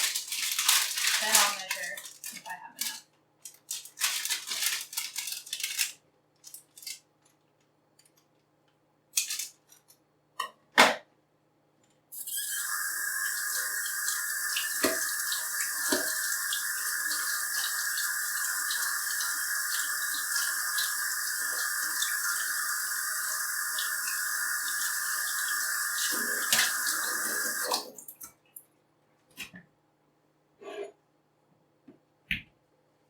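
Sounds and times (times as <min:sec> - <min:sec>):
tap water running over grapes: 0:12.2 - 0:28.0.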